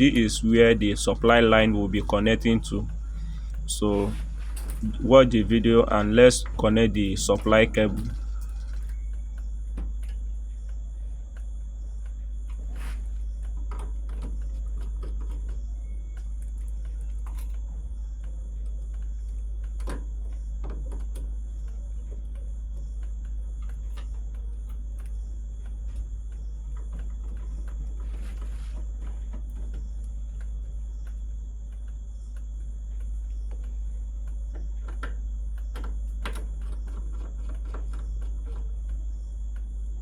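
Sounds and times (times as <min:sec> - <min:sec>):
steady low rumble: 0:00.0 - 0:08.5.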